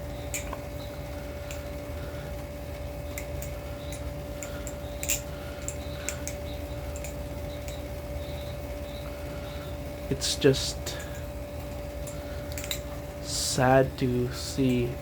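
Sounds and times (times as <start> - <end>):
low hum: 0.0 - 15.0
balisong knife handles clacking: 0.3 - 1.8, 3.1 - 8.4, 10.2 - 15.0.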